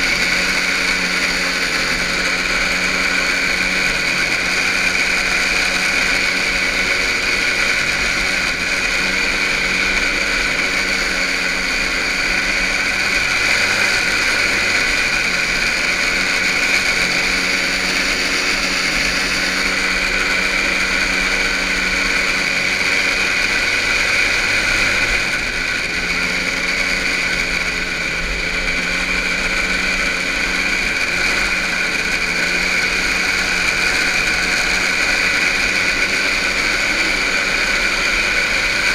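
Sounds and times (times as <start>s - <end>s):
small snowmobile engines droning: 0.0s - 38.9s.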